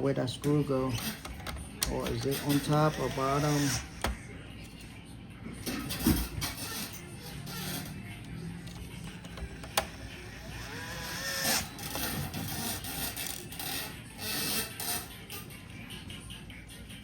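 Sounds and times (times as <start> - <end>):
plastic and metal parts clicking: 0.9 - 2.9.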